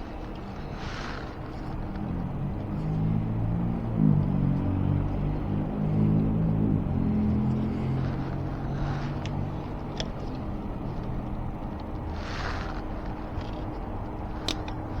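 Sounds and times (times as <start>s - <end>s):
hand tool clicking on spoke: 7.4s - 15.0s.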